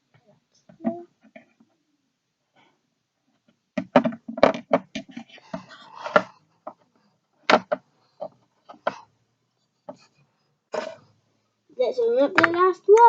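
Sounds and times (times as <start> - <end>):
plastic toys clicking and knocking: 3.4 - 9.0, 12.2 - 13.0
plastic toy taps: 12.4 - 13.0.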